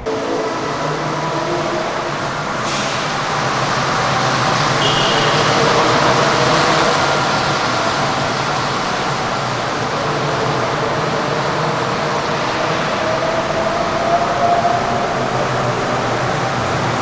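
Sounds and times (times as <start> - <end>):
trolleybus running: 0.0 - 17.0.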